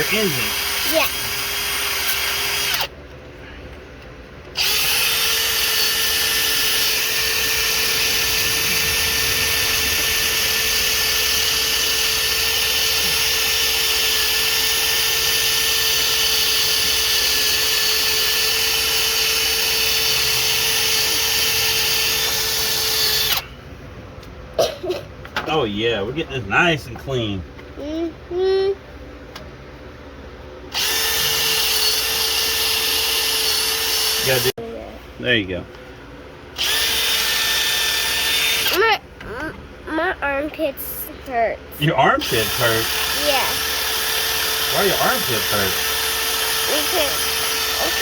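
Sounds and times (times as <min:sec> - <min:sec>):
power tool grinding with abrasive wheel: 0:00.0 - 0:02.9, 0:04.5 - 0:23.4, 0:30.7 - 0:34.5, 0:36.6 - 0:39.4, 0:41.8 - 0:48.0.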